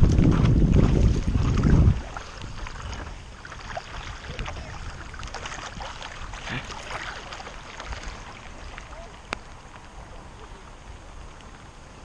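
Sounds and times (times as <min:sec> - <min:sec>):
paddle water splashes and drips: 0:00.0 - 0:12.0
wind rumble on microphone: 0:00.0 - 0:12.0
raindrop ticks: 0:09.3 - 0:09.9.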